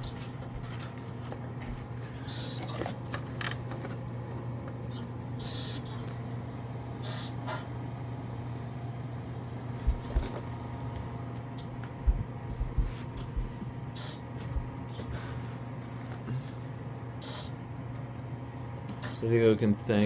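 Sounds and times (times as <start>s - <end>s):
rustling handling noises: 0.0s - 5.0s
low room tone hum: 0.0s - 20.0s.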